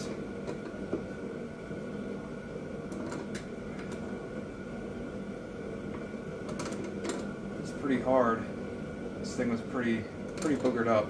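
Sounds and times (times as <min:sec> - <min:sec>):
fan humming: 0:00.0 - 0:11.0.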